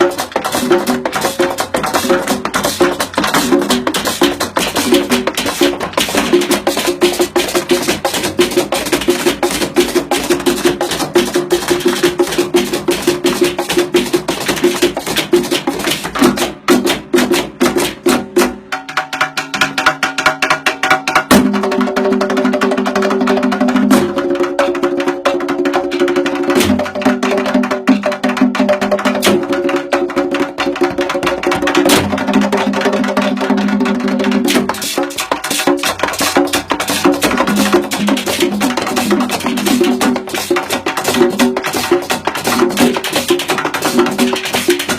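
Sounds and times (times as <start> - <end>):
wood-block-like percussion beat: 0.0 - 44.9.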